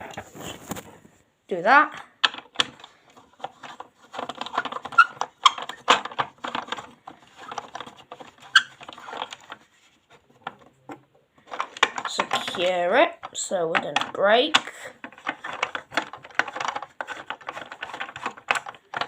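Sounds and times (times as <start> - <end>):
plastic toy pieces clicking: 2.2 - 9.6, 11.4 - 19.0.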